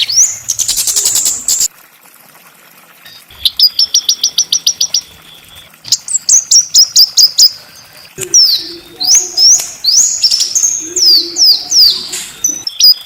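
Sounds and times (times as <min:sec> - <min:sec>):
songbird singing: 0:03.1 - 0:13.0.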